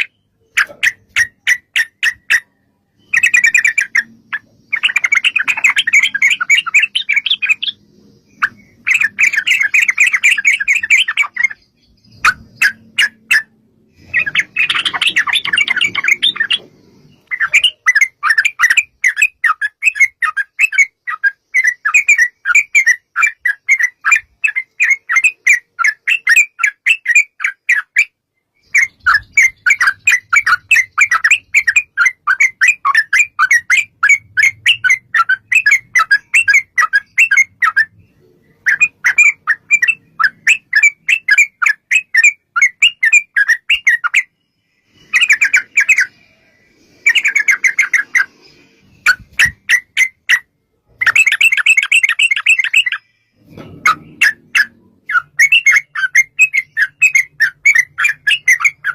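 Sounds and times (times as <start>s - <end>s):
bulbul chattering calls: 0.0s - 37.9s.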